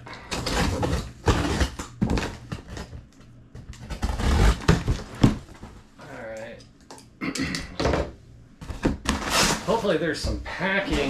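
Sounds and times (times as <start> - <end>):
rustling and scraping of cardboard: 0.1 - 3.0, 3.7 - 5.8, 8.6 - 11.0.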